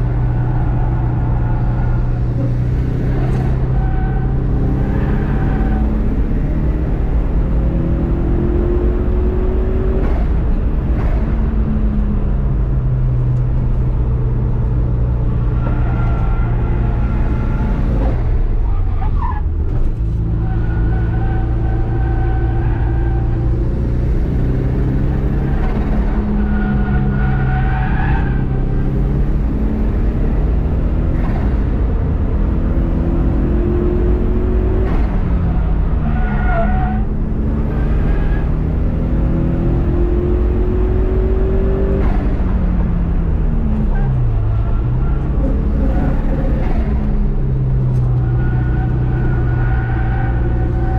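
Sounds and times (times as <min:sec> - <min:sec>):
race car engine revving: 0:19.4 - 0:50.9.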